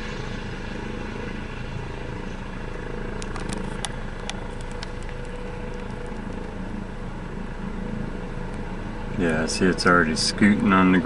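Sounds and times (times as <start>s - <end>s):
helicopter rotors and turbine: 0.0s - 11.0s
sharp clicks: 3.2s - 6.5s.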